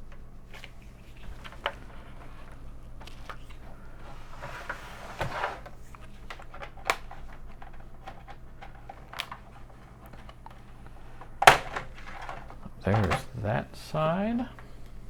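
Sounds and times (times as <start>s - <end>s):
plastic card scraping case: 0.5s - 14.7s
plastic latches snapping: 5.6s - 13.3s.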